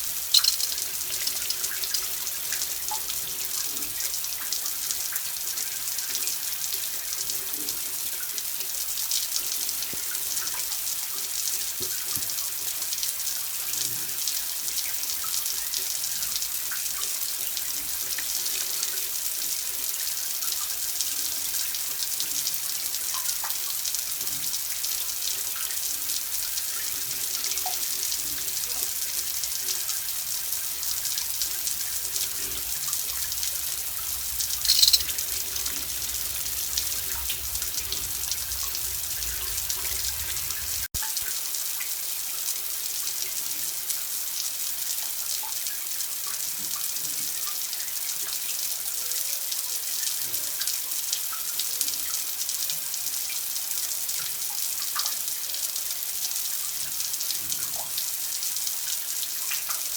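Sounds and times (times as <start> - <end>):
running water splashing: 0.0 - 3.4, 26.3 - 41.2.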